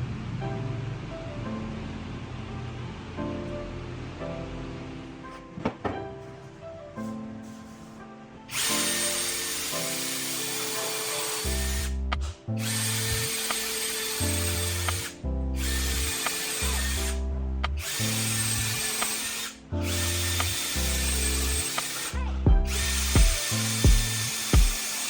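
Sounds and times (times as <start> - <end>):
power tool running loudly: 8.5 - 12.0, 12.6 - 17.2, 17.8 - 25.0
background music with bass: 11.4 - 13.6, 14.2 - 24.8.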